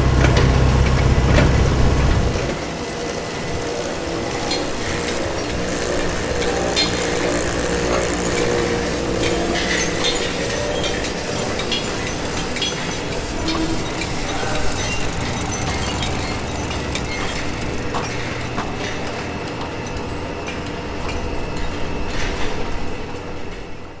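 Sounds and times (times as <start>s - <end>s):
machinery hum: 0.0s - 2.6s, 14.0s - 18.8s.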